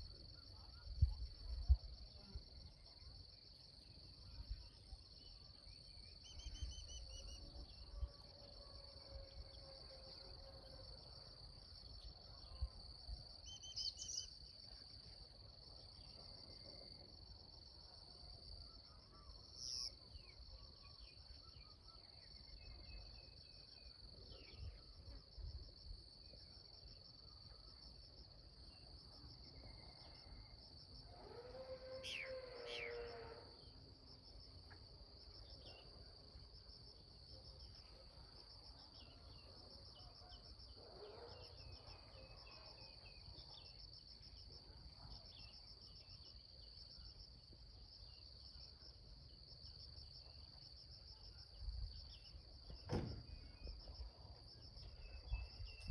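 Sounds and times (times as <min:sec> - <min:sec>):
insects chirring: 0:29.5 - 0:55.9
distant rooster crowing: 0:31.2 - 0:33.4.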